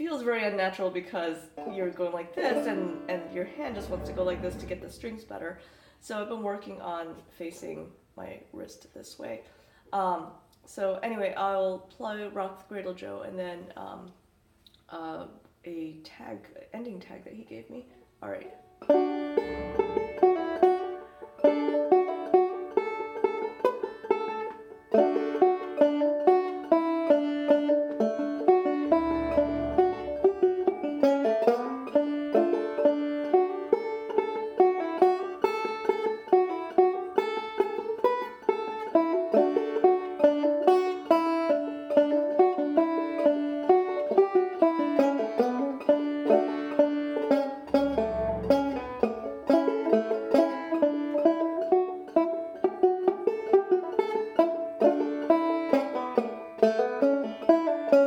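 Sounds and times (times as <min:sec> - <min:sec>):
banjo playing old-time tune: 0:00.0 - 0:05.5, 0:18.7 - 0:58.0.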